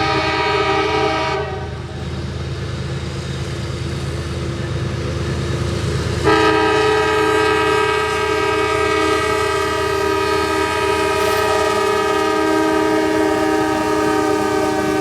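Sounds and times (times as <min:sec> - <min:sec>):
locomotive air horn chord: 0:00.0 - 0:01.9, 0:06.2 - 0:15.0.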